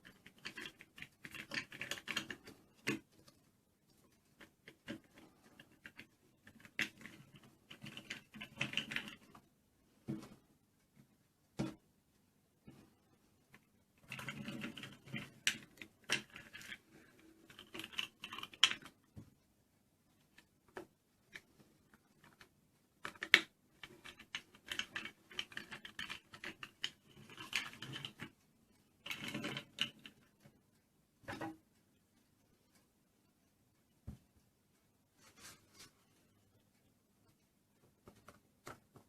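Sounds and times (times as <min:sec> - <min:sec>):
plastic toy parts clicking: 0:00.0 - 0:03.1, 0:04.4 - 0:09.3, 0:14.0 - 0:19.1, 0:22.2 - 0:28.4, 0:29.0 - 0:30.3.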